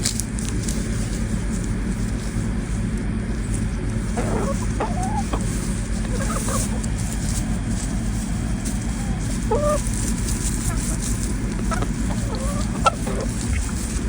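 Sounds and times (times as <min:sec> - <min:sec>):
chickens clucking: 0:00.2 - 0:14.0
low rushing noise: 0:12.7 - 0:14.0.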